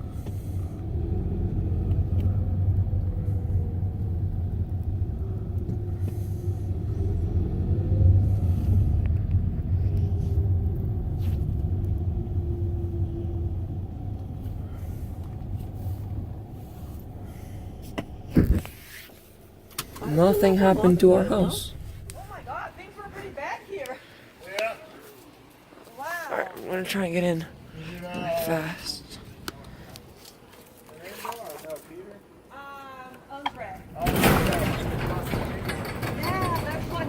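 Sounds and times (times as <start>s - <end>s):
car engine and road rumble: 0.0s - 24.4s, 33.6s - 37.0s.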